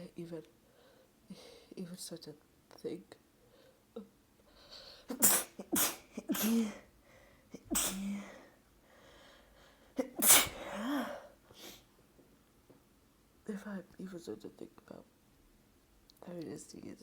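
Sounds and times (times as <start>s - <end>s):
person sneezing: 5.1s - 6.9s, 7.6s - 8.5s, 10.0s - 11.8s
voiced gasps: 6.5s - 11.8s.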